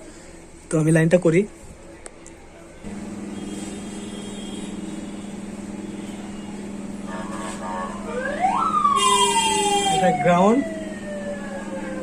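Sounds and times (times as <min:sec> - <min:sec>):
vehicle siren wailing: 0:07.1 - 0:12.0.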